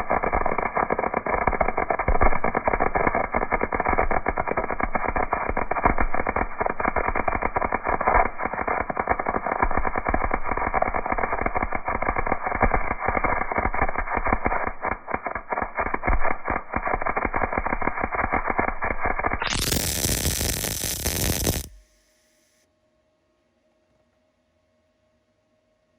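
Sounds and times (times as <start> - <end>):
welding arc crackling: 0.0 - 21.8.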